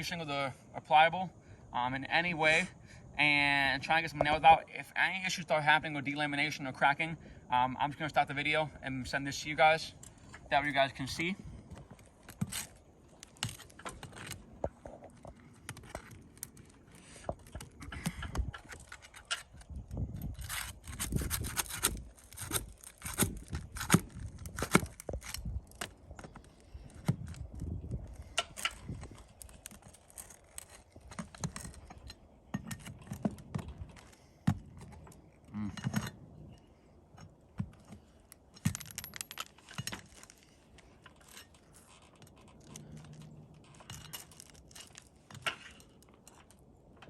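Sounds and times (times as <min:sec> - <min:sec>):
scraping of roof shingles: 0:11.8 - 0:32.1.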